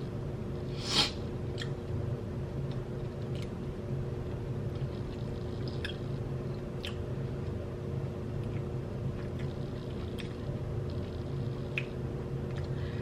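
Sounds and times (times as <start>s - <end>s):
steady low hum: 0.0s - 13.0s
person chewing food: 4.7s - 7.6s, 8.3s - 12.9s.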